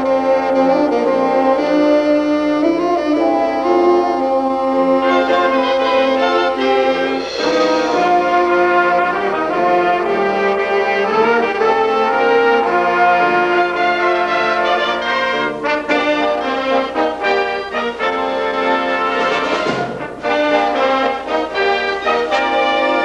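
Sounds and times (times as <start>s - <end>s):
concert band playing: 0.0s - 23.0s
trombones and trumpets chords: 0.0s - 23.0s.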